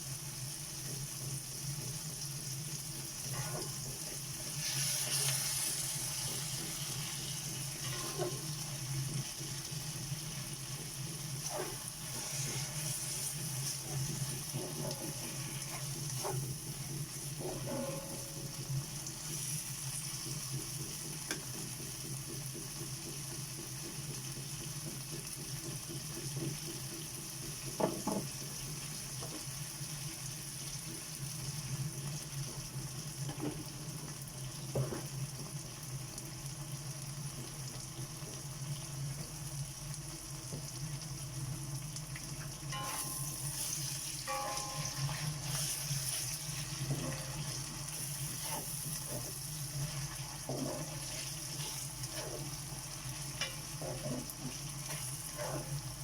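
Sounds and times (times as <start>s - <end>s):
vegetables sizzling in oil: 0.0s - 56.0s
utensil scraping pan: 17.4s - 18.6s, 53.4s - 55.9s.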